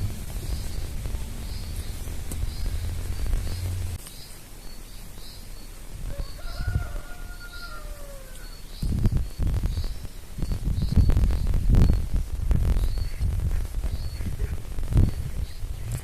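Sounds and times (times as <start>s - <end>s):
low rumble: 0.0s - 4.0s
small bird chirping: 0.0s - 16.0s
rooster crowing: 6.0s - 8.7s.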